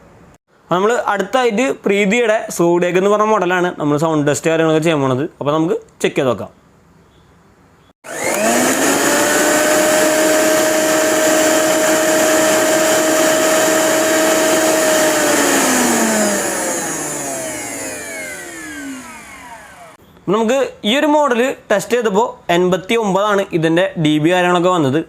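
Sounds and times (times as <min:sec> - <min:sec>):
mixer grinder motor whine: 0:08.0 - 0:20.0.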